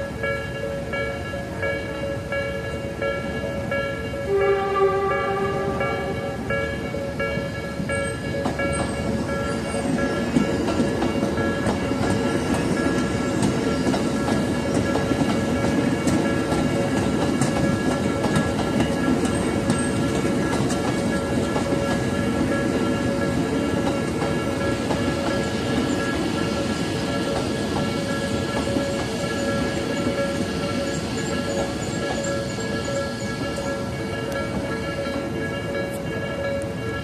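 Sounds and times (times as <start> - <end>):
steady train rumble: 0.0 - 37.0
train wheels clacking over rail joints: 7.4 - 37.0.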